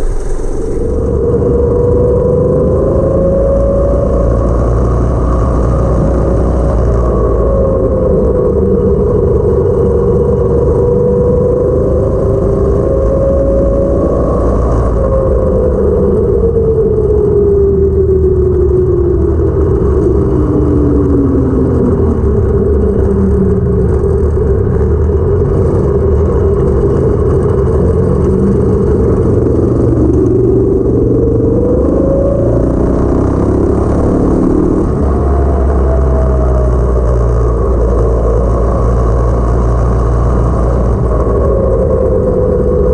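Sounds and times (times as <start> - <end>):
go kart engine running: 19.0 - 42.9.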